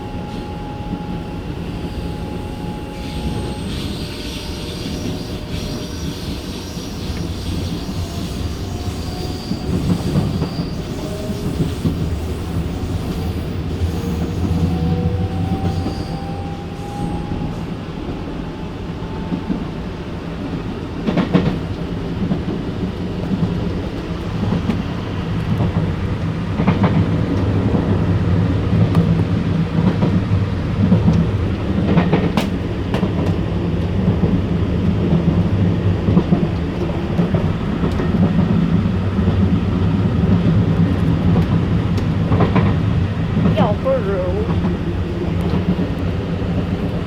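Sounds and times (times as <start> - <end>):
train rumbling and rattling: 0.0 - 47.0.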